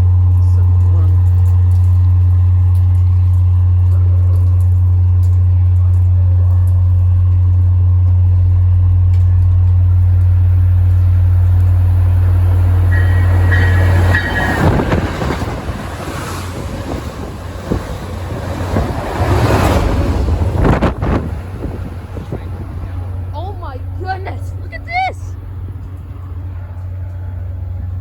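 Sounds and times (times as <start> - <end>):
steady low hum: 0.0 - 28.0
train wheels rushing and clattering: 11.4 - 23.4.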